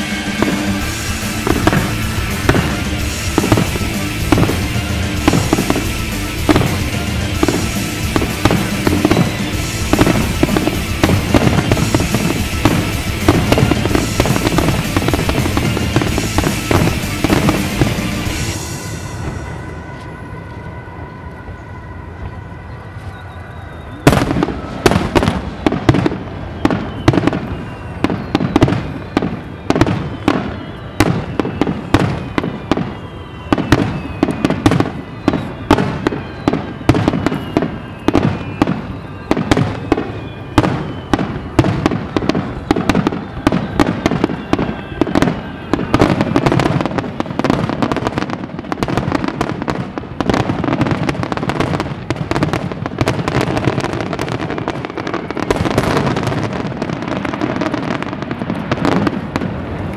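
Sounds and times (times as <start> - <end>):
steady held tones: 0.0 - 26.6
fireworks bursting: 0.0 - 59.9.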